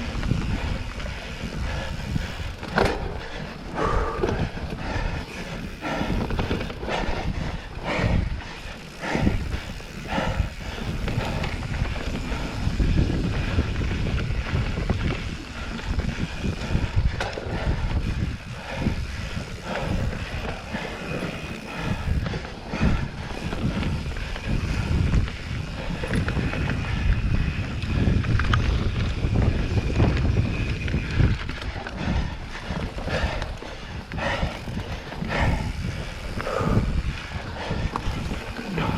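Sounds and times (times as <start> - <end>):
bike knocks and rattles: 0.0 - 7.1
wind rumbling on microphone: 0.0 - 38.9.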